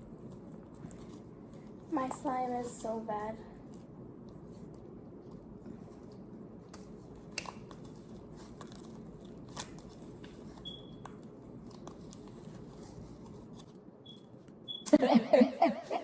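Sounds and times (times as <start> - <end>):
low room hum: 0.0 - 16.0
slime kneaded by hand: 3.5 - 13.7.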